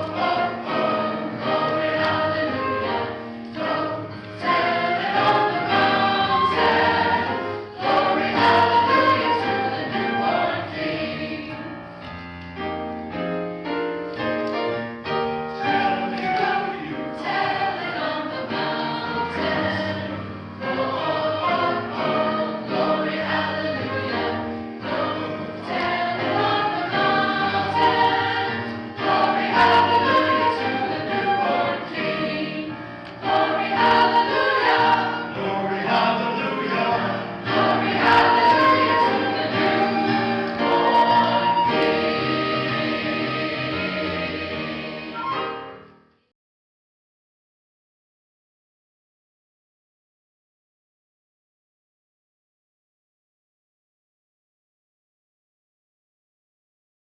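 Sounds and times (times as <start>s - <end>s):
choir singing: 0.0s - 12.0s, 15.5s - 45.8s
musical accompaniment: 0.0s - 46.3s.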